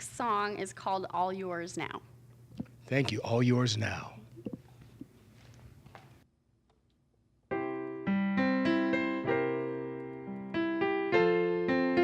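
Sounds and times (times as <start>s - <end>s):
piano playing: 7.5s - 12.0s.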